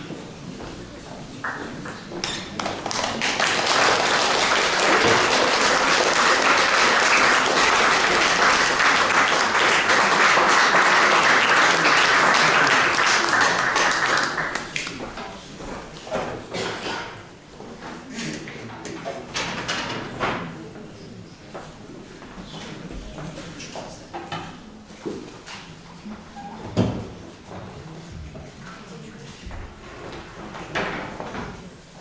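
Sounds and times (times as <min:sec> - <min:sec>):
audience applauding: 0:02.6 - 0:15.0.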